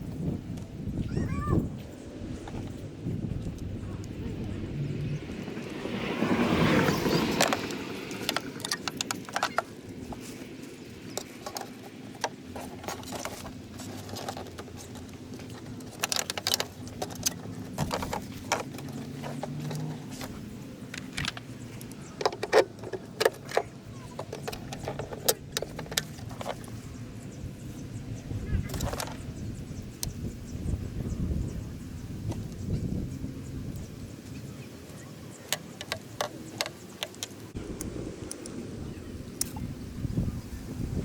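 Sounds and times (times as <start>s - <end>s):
hand tools clicking and rattling: 6.9s - 26.8s, 34.9s - 37.6s.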